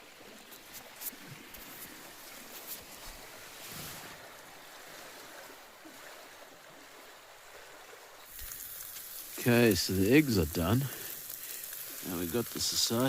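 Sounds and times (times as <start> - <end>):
water-like noise: 0.0 - 13.0
wind hiss: 8.2 - 13.0.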